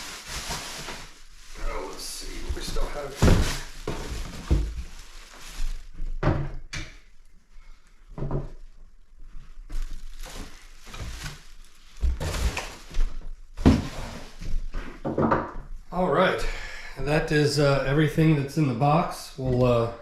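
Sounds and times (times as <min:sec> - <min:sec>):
packaging rustling: 0:00.0 - 0:06.2, 0:09.6 - 0:14.7.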